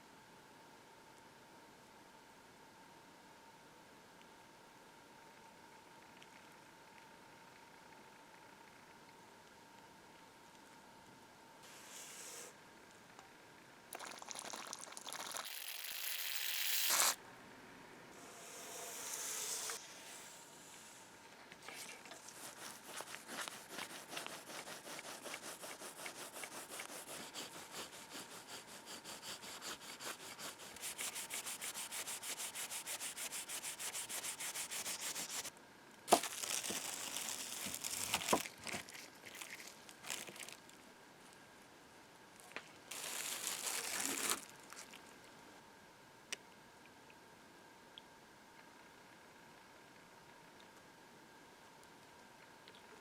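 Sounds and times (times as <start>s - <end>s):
sandpaper rubbing on metal: 22.2s - 35.5s.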